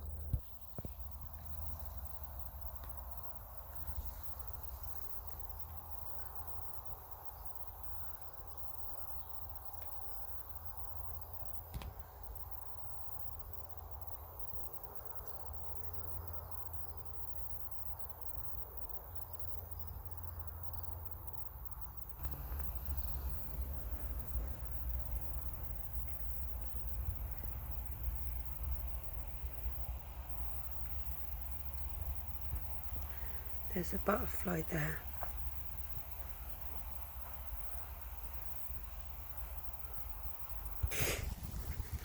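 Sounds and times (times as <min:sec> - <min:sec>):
faint insects chirring: 0:00.0 - 0:42.0
wind rumble on microphone: 0:40.8 - 0:42.0.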